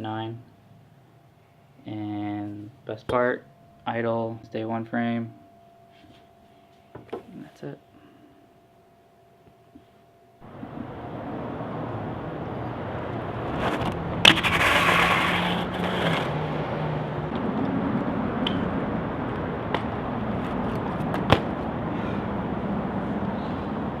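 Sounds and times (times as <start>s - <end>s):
bike tyres rolling on pavement: 10.5s - 24.0s
scraping rush: 13.2s - 17.0s.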